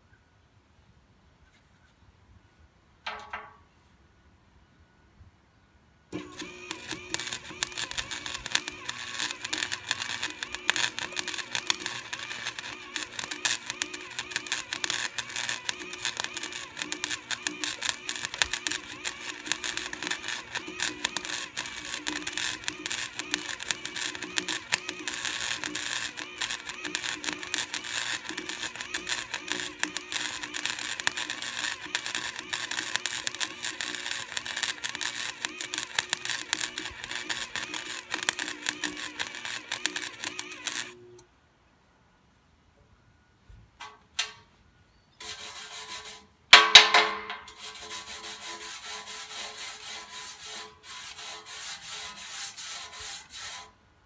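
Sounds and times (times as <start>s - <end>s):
arc welder crackling: 6.1s - 41.2s, 45.2s - 53.7s
welder hum: 6.1s - 41.2s.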